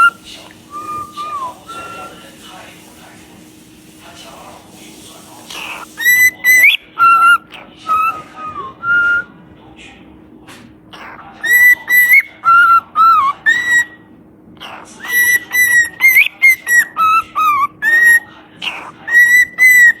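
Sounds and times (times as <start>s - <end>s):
parrot whistling a tune: 0.0s - 2.4s, 5.6s - 9.3s, 11.4s - 14.1s, 15.0s - 20.0s.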